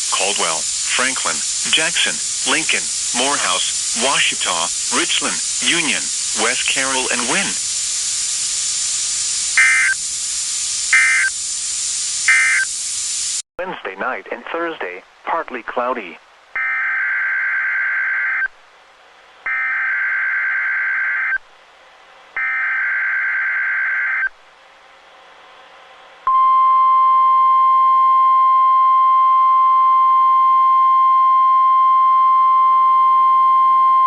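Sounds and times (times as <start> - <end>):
screeching digital data bursts: 0.0 - 13.4, 19.5 - 21.4
steady alarm tone: 0.0 - 13.4, 19.5 - 21.4, 22.4 - 24.3.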